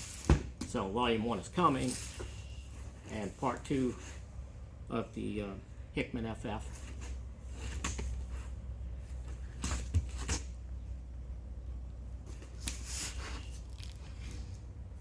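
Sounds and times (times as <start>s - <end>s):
steady low hum: 0.0s - 15.0s
books and packaging rustling: 12.2s - 14.7s.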